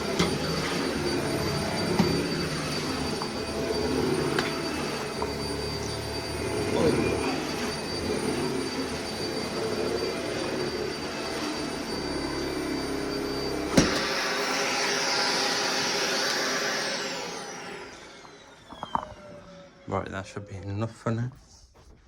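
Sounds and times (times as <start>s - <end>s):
vacuum cleaner running: 0.0s - 20.8s.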